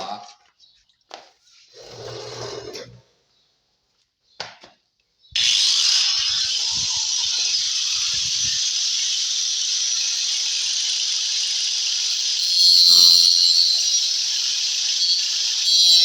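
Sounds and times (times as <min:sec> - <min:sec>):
power tool cutting wood: 0:05.4 - 0:16.0.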